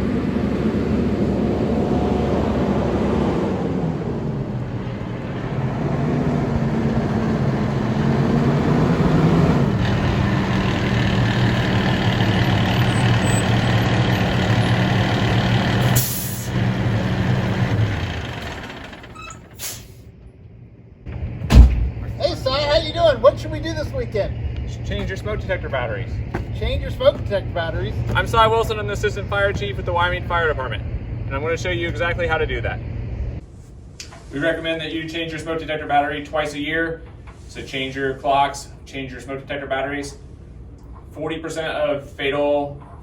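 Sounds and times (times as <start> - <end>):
truck engine running: 0.0 - 19.6, 21.1 - 33.4
air brakes hiss: 15.9 - 16.6, 19.5 - 20.1
sharp knock: 21.4 - 22.0.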